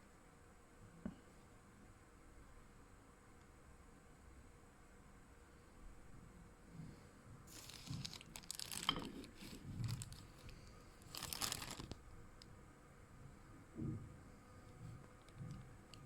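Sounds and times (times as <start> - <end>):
crinkling rustling handling noise: 7.5 - 12.1.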